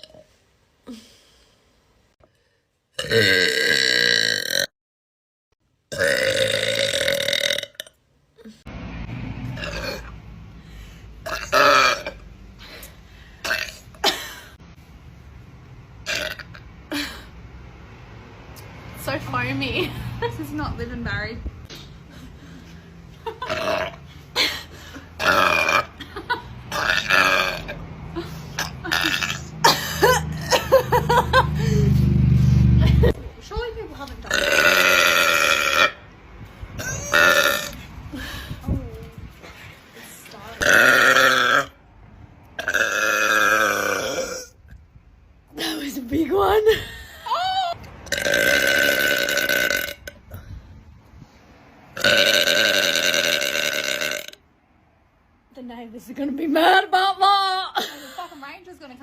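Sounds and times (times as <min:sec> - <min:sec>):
woman belching loudly: 0:03.0 - 0:04.7, 0:05.9 - 0:08.0, 0:09.6 - 0:10.1, 0:11.2 - 0:12.2, 0:13.5 - 0:14.2, 0:16.1 - 0:16.6, 0:23.4 - 0:24.0, 0:25.2 - 0:26.0, 0:26.7 - 0:27.8, 0:28.6 - 0:29.8, 0:34.2 - 0:36.0, 0:36.8 - 0:37.8, 0:40.6 - 0:41.8, 0:42.6 - 0:44.6, 0:48.0 - 0:50.2, 0:52.0 - 0:54.4
woman burping: 0:03.0 - 0:04.7, 0:05.9 - 0:08.6, 0:09.6 - 0:10.1, 0:11.2 - 0:12.2, 0:13.4 - 0:14.6, 0:16.1 - 0:17.3, 0:23.4 - 0:27.8, 0:28.6 - 0:30.8, 0:34.2 - 0:36.0, 0:36.8 - 0:37.9, 0:40.6 - 0:41.8, 0:42.6 - 0:44.6, 0:48.1 - 0:50.4, 0:52.0 - 0:54.4.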